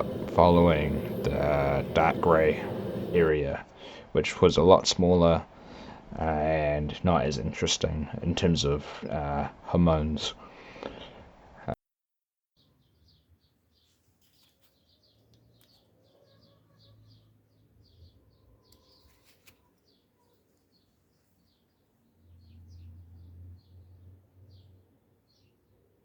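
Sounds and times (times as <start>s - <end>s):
low hum: 0.0s - 3.3s
faint birds chirping: 0.0s - 6.2s, 12.6s - 26.0s.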